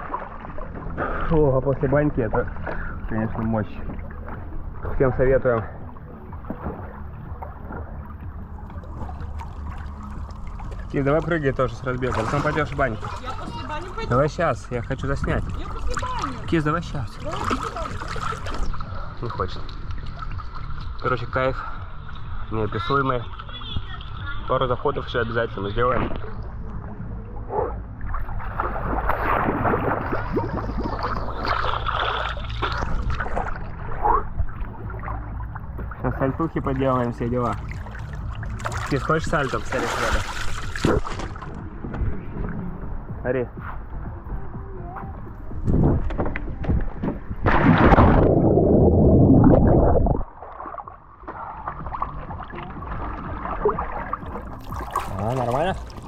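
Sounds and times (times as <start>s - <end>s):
water sloshing and gurgling: 0.0s - 56.0s
person splashing into pool: 28.4s - 33.6s, 39.6s - 41.5s, 47.4s - 56.0s.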